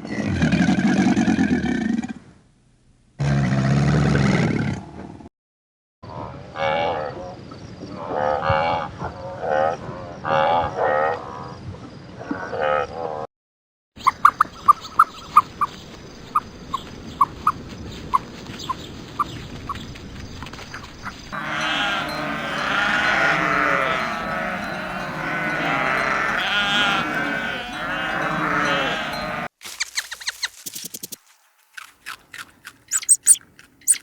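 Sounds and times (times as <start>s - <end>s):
livestock calling: 21.3s - 29.5s, 32.9s - 34.0s
short single-pitched chirps: 29.6s - 31.3s, 32.9s - 34.0s.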